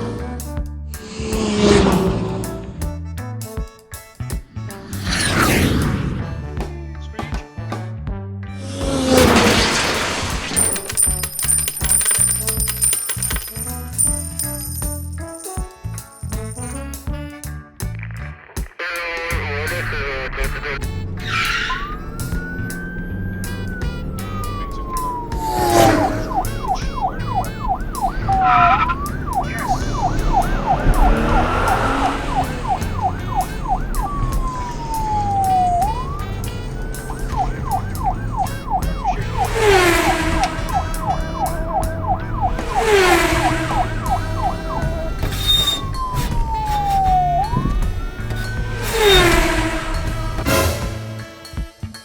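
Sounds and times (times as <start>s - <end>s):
police siren wailing and yelping: 20.6s - 50.5s.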